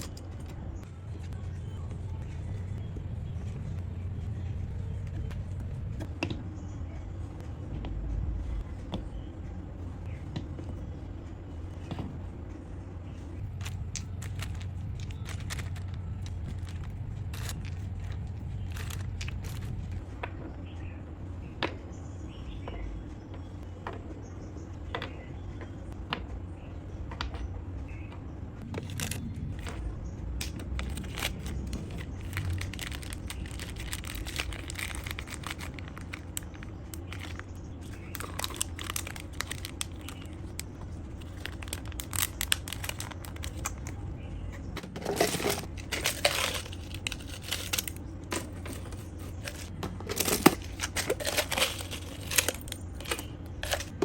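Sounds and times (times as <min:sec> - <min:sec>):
steady low hum: 0:00.0 - 0:54.0
plastic crinkling: 0:13.5 - 0:19.9, 0:28.7 - 0:29.3, 0:30.6 - 0:44.0, 0:44.8 - 0:54.0
small parts clicking and tapping: 0:13.6 - 0:19.7.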